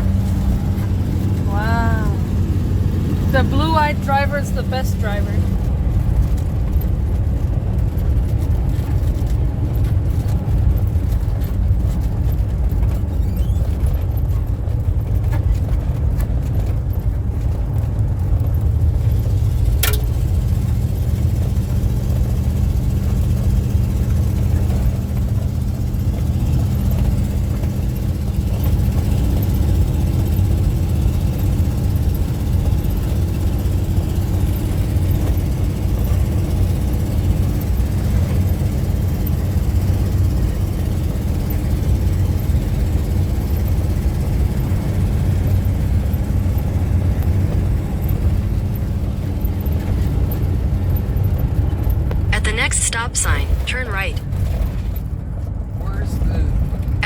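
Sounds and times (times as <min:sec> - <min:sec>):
car cabin engine and tyre rumble: 0:00.0 - 0:57.0
sharp click: 0:19.8 - 0:20.1.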